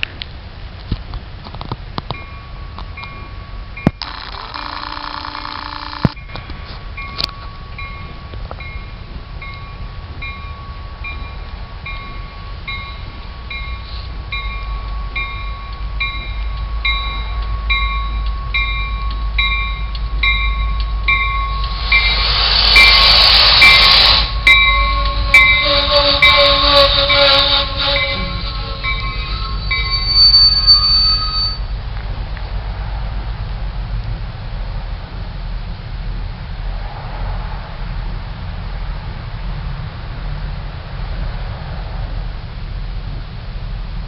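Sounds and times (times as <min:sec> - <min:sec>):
train rumble: 0:00.0 - 0:44.0
railroad crossing bell dinging: 0:02.1 - 0:31.8
loud rush of noise: 0:20.9 - 0:26.6, 0:31.6 - 0:44.0
horn-like tones: 0:21.6 - 0:31.7.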